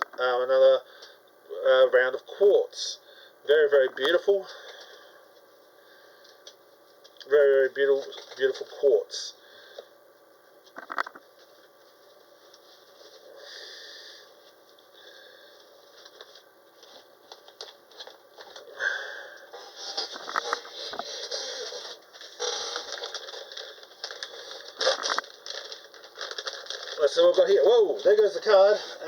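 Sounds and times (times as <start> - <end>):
packaging rustling and clicking: 19.6 - 29.0.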